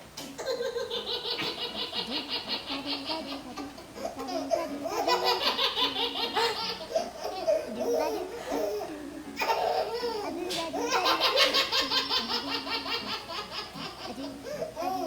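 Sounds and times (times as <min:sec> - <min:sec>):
baby laughing: 0:00.2 - 0:15.0.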